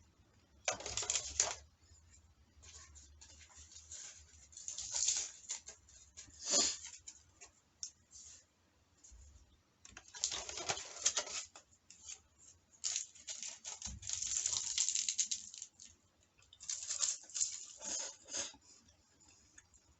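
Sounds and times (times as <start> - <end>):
eating crackling and clicking: 12.8 - 19.8.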